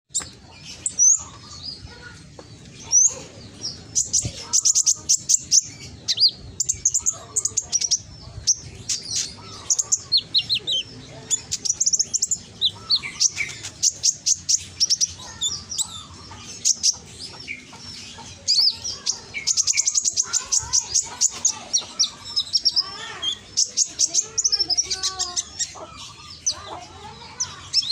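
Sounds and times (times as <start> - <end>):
sunbird chirping and trilling: 0.1 - 27.9.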